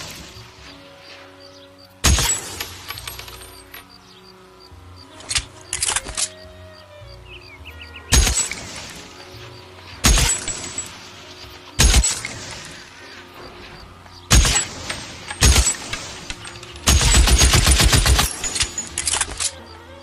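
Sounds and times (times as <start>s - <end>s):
rifle shots echoing: 2.0s - 3.4s, 8.1s - 9.2s, 9.9s - 11.2s, 11.8s - 19.5s.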